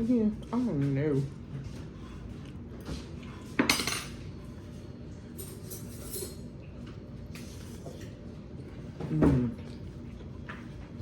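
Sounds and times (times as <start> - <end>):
utensils clinking on a plate: 3.6 - 4.3, 5.3 - 8.2.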